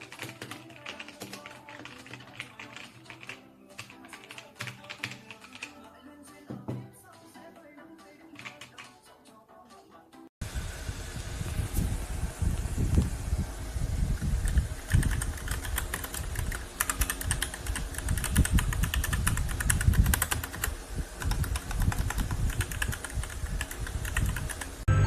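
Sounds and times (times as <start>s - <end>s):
mechanical keyboard clicks: 0.0s - 5.7s, 14.4s - 24.7s.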